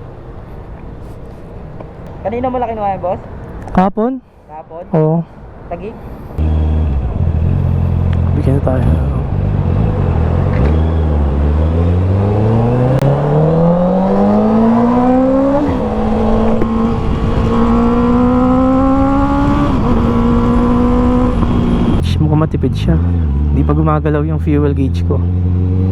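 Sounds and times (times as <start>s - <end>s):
motorcycle engine accelerating: 6.4s - 25.9s.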